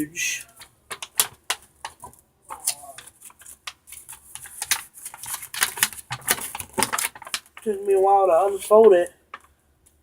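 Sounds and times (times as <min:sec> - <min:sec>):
playmat crackling and rustling: 0:00.0 - 0:09.6.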